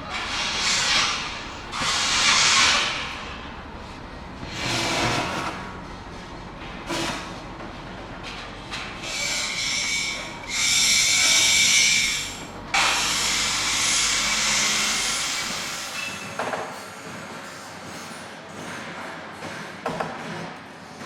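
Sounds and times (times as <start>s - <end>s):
machinery hissing with high whine: 0.0s - 7.4s, 8.6s - 17.6s.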